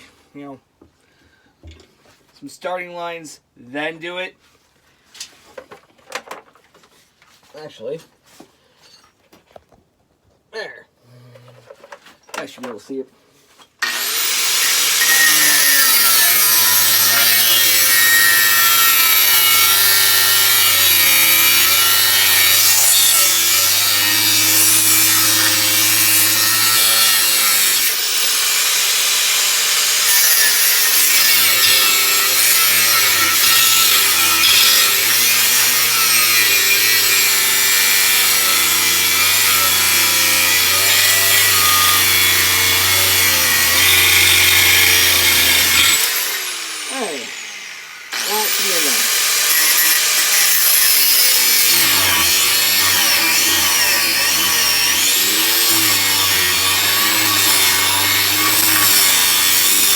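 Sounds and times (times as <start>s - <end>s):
power tool cutting steel: 13.8s - 59.9s.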